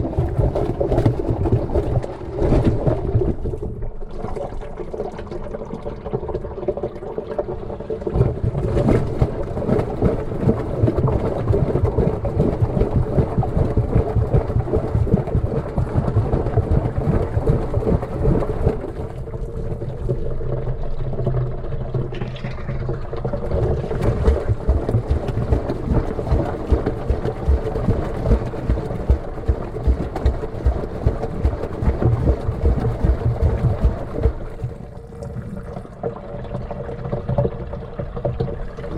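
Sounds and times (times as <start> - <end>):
water sloshing in washing machine: 0.0 - 38.9
steady hum: 21.9 - 35.8.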